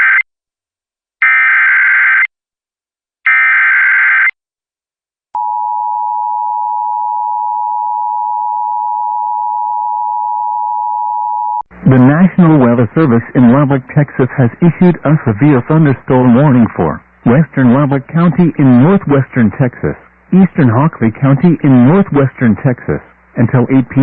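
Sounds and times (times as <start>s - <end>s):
steady attention tone: 5.4s - 24.0s.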